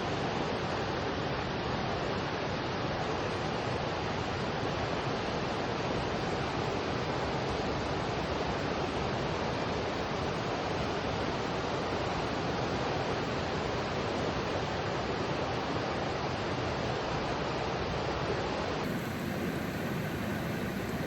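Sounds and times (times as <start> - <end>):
stream water rushing: 18.8 - 21.0.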